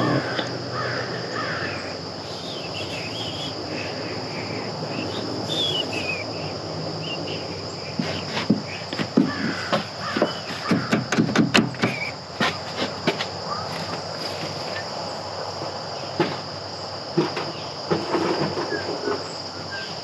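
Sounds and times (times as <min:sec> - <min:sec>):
high-pitched insect drone: 0:00.0 - 0:10.9
birds calling: 0:00.0 - 0:20.0
sharp clicks and knocks: 0:08.0 - 0:13.3.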